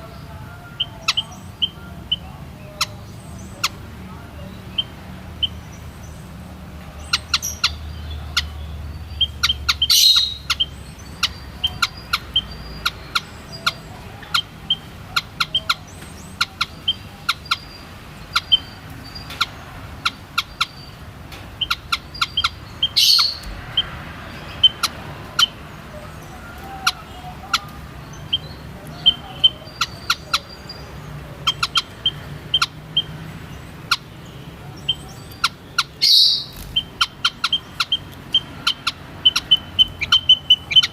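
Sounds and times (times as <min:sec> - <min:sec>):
bird chirping: 0:00.0 - 0:40.9.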